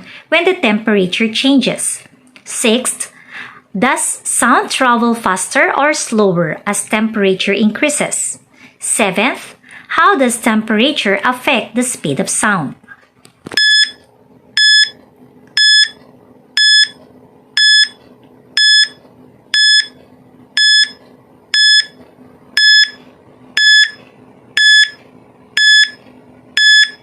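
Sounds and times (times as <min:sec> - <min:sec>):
electronic timer beeping: 0:13.6 - 0:14.0, 0:14.6 - 0:15.0, 0:15.6 - 0:16.0, 0:16.6 - 0:17.0, 0:17.6 - 0:18.0, 0:18.6 - 0:20.0, 0:20.6 - 0:22.0, 0:22.6 - 0:23.0, 0:23.6 - 0:24.0, 0:24.6 - 0:25.0, 0:25.6 - 0:26.0, 0:26.6 - 0:27.0.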